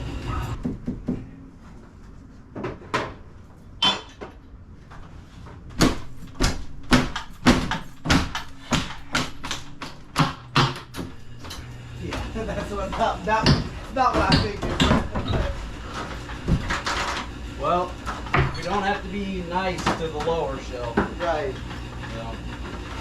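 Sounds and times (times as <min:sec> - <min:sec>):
tool knocking on garage door: 0:13.0 - 0:15.6.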